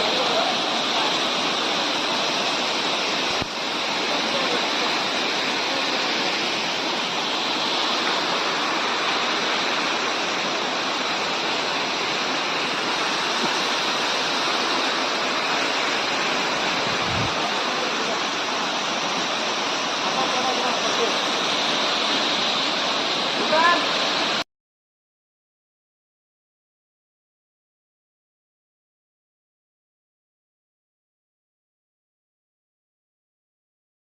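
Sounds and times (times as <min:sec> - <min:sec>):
waterfall rushing: 0:00.0 - 0:24.4.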